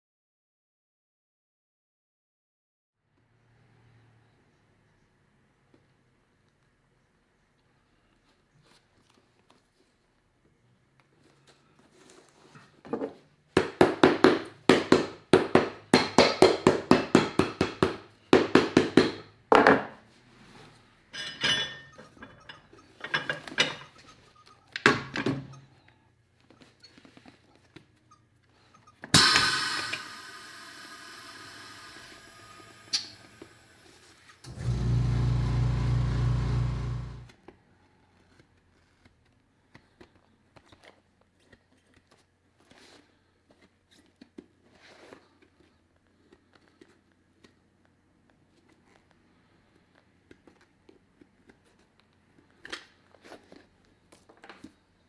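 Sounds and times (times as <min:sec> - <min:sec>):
motor humming: 0:29.8 - 0:37.3.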